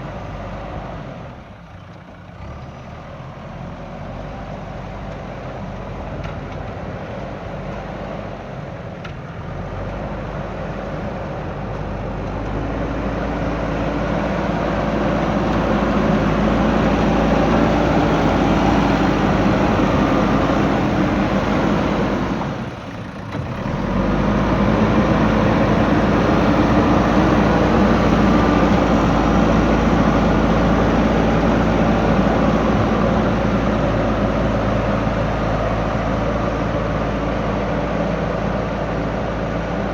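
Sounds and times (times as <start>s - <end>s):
backhoe diesel engine running: 0.0s - 39.9s.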